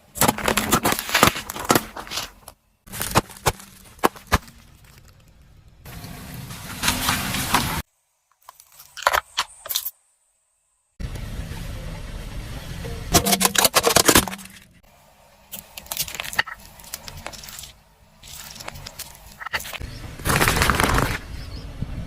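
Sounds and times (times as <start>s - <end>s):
tyres crushing plastic toys: 0.0s - 5.8s, 13.1s - 14.8s, 15.5s - 21.2s
low engine rumble: 11.0s - 20.4s, 21.2s - 22.0s.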